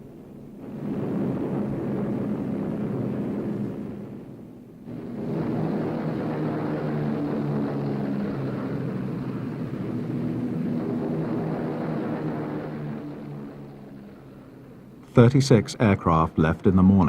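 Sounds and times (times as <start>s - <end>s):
aircraft piston engines droning: 0.0s - 17.0s.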